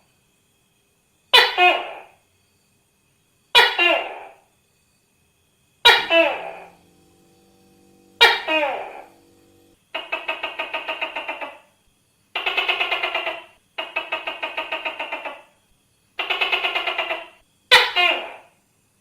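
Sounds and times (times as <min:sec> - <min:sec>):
gecko rattling calls: 0:05.8 - 0:09.1, 0:09.7 - 0:11.7, 0:12.3 - 0:15.6, 0:16.2 - 0:18.4.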